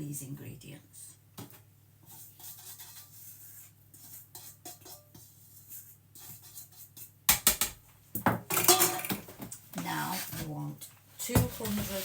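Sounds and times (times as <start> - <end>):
kitchen utensils clinking: 7.3 - 10.0, 11.2 - 12.0.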